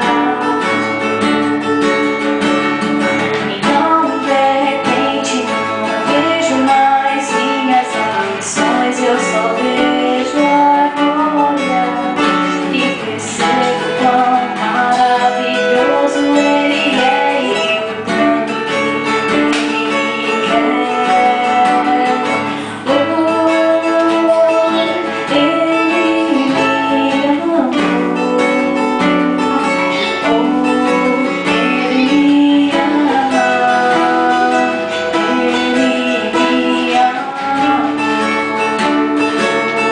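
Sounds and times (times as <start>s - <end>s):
strummed acoustic guitar: 0.0s - 39.9s
woman singing: 0.0s - 39.9s.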